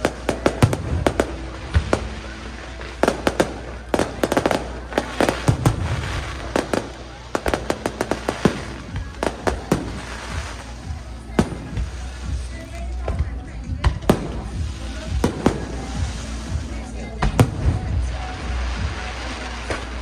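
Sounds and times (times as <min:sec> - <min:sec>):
fireworks bangs and crackling: 0:00.0 - 0:20.0.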